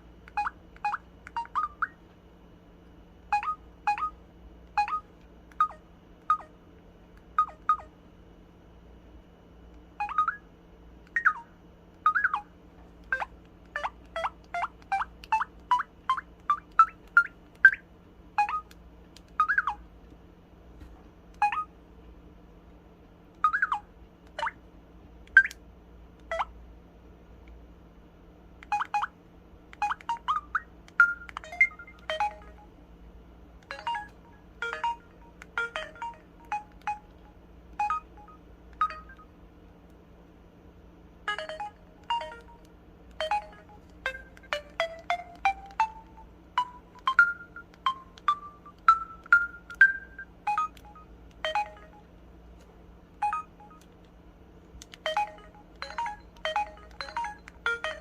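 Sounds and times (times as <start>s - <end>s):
electronic beeps and chirps: 0.3s - 2.0s, 3.3s - 4.2s, 4.8s - 6.5s, 7.4s - 7.9s, 10.0s - 10.5s, 11.1s - 12.5s, 13.1s - 17.8s, 18.4s - 18.7s, 19.4s - 19.8s, 21.4s - 21.7s, 23.4s - 24.6s, 28.7s - 29.1s, 29.8s - 32.7s, 33.7s - 37.2s, 37.8s - 39.3s, 43.2s - 52.1s, 53.2s - 53.9s, 55.0s - 58.0s.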